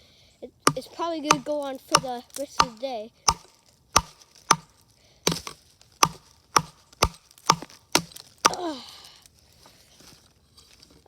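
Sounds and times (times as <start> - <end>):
axe chopping wood: 0.6 - 8.8.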